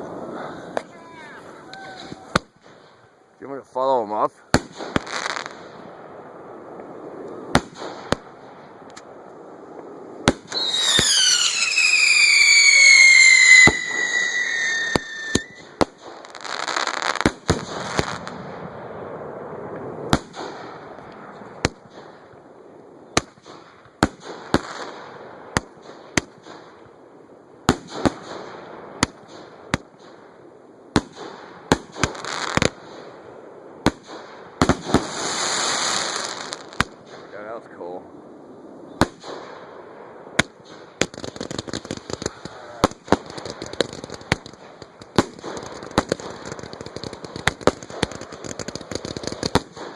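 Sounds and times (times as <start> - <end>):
fireworks bangs: 0.0 - 3.0, 4.5 - 6.2, 6.8 - 22.3, 27.6 - 30.3, 30.9 - 33.2, 33.8 - 37.6, 39.0 - 49.9
fireworks hissing crackle: 4.3 - 5.8, 10.2 - 18.6, 31.1 - 33.1, 33.8 - 37.2, 40.4 - 49.9
falling firework whistle: 10.4 - 15.8.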